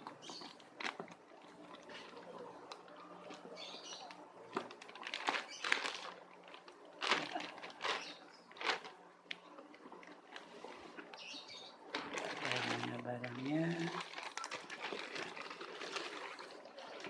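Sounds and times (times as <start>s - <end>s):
packaging tearing and rustling: 3.9s - 9.4s, 11.9s - 17.0s.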